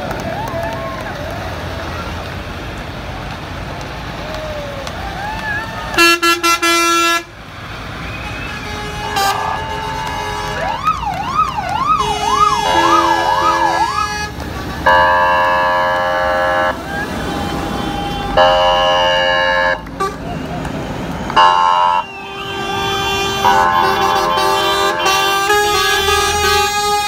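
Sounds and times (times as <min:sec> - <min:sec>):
fire engine horn blasts: 0:05.9 - 0:07.4, 0:08.1 - 0:10.9, 0:11.8 - 0:27.0
siren sweeping up and down: 0:10.6 - 0:14.1.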